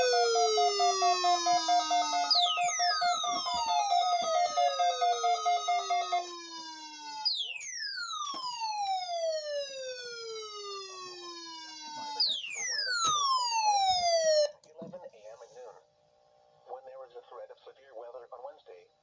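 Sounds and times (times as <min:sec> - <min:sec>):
electronic siren sweeping down: 0:00.0 - 0:14.5.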